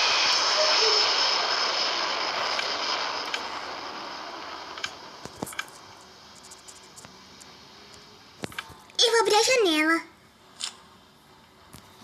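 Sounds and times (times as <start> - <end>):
airplane engine hiss: 0.0 - 8.4.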